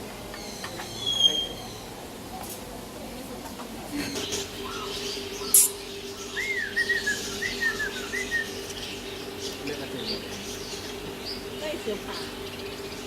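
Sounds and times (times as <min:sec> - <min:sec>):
steady low hum: 0:00.0 - 0:13.0
bird chirping: 0:04.1 - 0:13.0.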